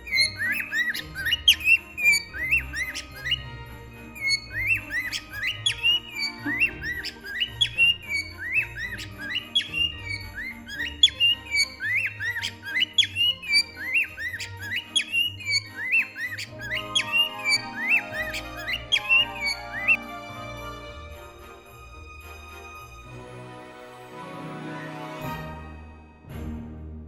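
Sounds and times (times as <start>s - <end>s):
background music: 0.0s - 27.0s
cockatiel honking calls: 4.2s - 20.1s.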